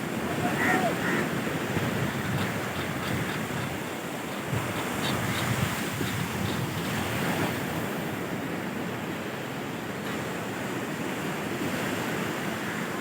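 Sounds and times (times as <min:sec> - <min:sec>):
wind on microphone: 0:00.0 - 0:08.2
sea surf washing on shore: 0:00.0 - 0:13.0.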